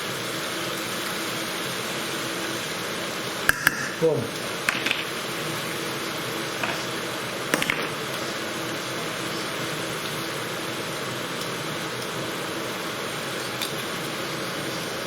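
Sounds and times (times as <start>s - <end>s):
sauce sizzling in a pan: 0.0s - 15.0s.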